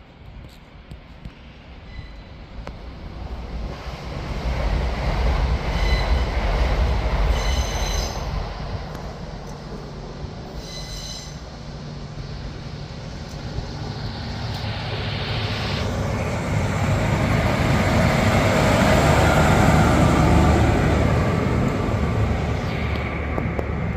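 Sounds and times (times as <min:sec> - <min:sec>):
train rumbling past: 0:00.0 - 0:23.9
train wheel squeals: 0:01.8 - 0:02.5, 0:05.6 - 0:06.5, 0:07.2 - 0:08.5, 0:10.5 - 0:11.6.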